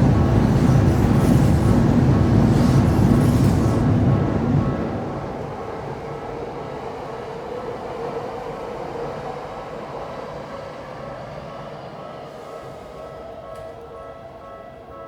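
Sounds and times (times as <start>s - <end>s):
train running past: 0.0s - 15.0s
level crossing warning bell: 11.5s - 15.0s.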